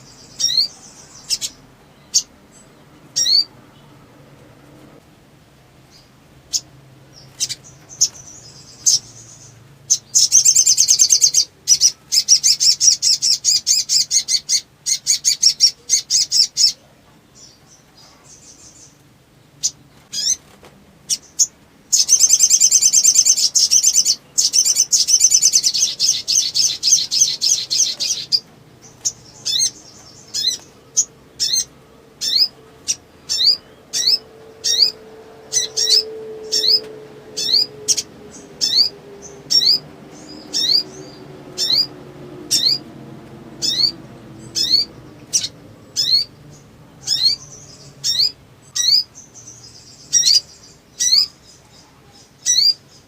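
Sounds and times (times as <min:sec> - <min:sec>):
bird trilled chattering song: 0:00.0 - 0:03.5, 0:05.9 - 0:16.8, 0:19.6 - 0:41.9, 0:42.5 - 0:42.9, 0:43.6 - 0:53.0
bird high chirps: 0:00.0 - 0:04.0, 0:05.9 - 0:16.8, 0:19.6 - 0:43.0, 0:43.6 - 0:53.0.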